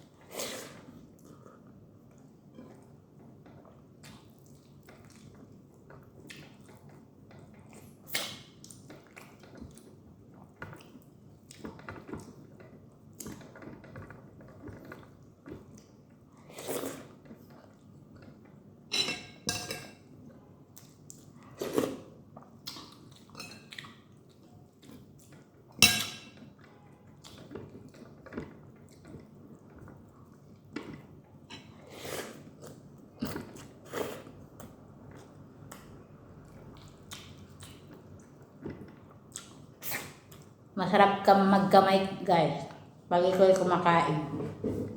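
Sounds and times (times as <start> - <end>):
person chewing food: 26.4 - 40.6.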